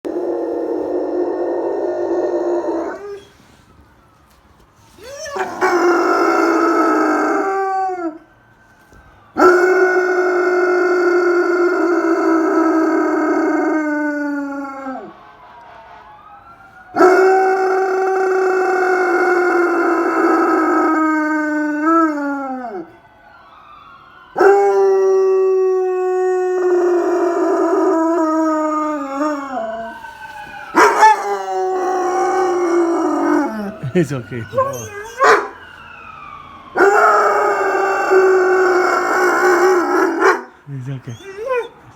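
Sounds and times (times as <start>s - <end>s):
dog howling: 5.0s - 8.2s, 9.4s - 15.1s, 17.0s - 22.9s, 24.4s - 29.9s, 30.7s - 35.6s, 36.8s - 41.9s.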